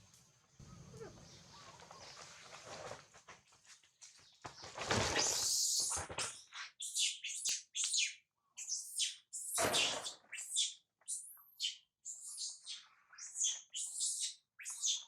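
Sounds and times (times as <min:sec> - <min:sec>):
scuffling noise: 0:01.6 - 0:05.0.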